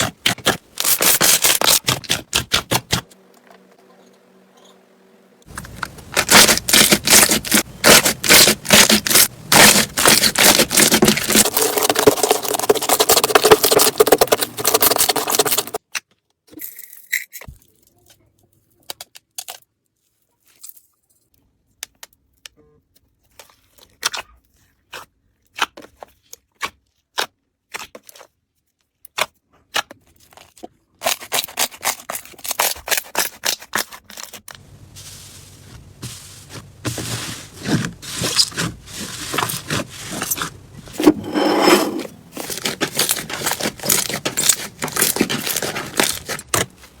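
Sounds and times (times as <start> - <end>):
slime crackling and popping: 5.6 - 15.6.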